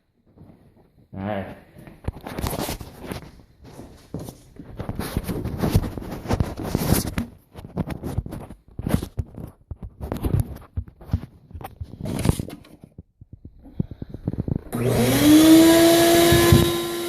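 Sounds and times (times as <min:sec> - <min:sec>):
knocks scuffs and rustling: 0:00.2 - 0:13.6.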